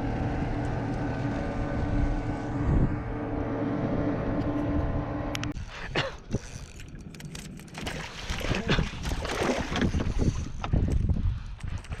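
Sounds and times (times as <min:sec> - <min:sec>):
water slapping against hull: 0:07.6 - 0:10.8.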